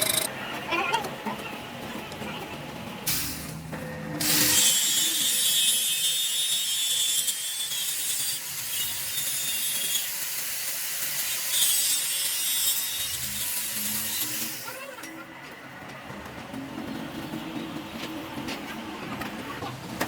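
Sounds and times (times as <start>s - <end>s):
power tool grinding steel: 4.2s - 15.2s.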